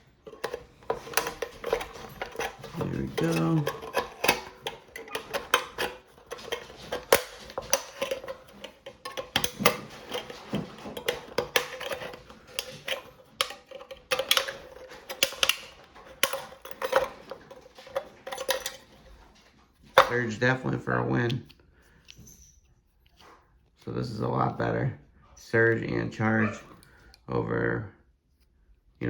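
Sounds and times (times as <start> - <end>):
can opener clicking and scraping: 0.0 - 22.2.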